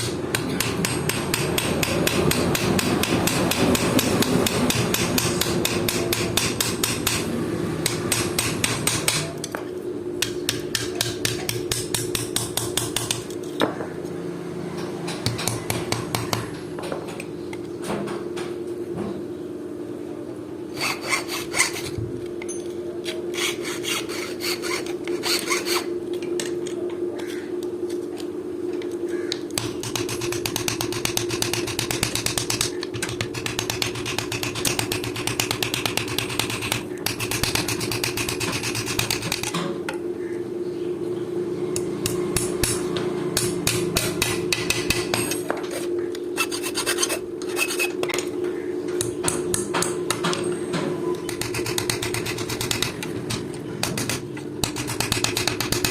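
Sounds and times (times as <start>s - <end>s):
hammer striking steel on anvil: 0.0s - 7.2s, 41.8s - 45.4s
steady hum: 0.0s - 55.9s
rubbing or filing: 20.8s - 22.0s, 23.3s - 25.8s, 46.4s - 48.0s.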